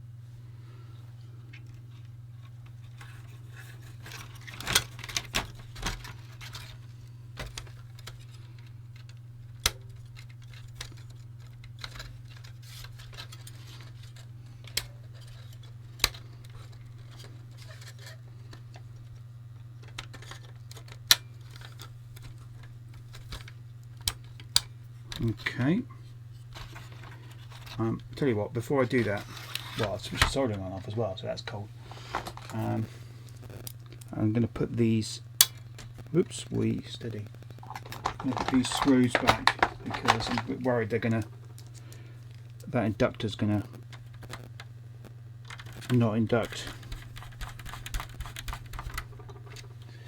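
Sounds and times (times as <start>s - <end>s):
steady low hum: 0.0s - 50.0s
small parts clicking and clinking: 37.5s - 42.6s.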